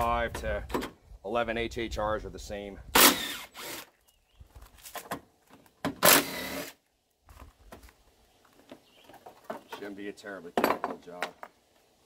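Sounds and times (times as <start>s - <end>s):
cordless power tool burst: 2.9s - 3.9s, 6.0s - 6.8s.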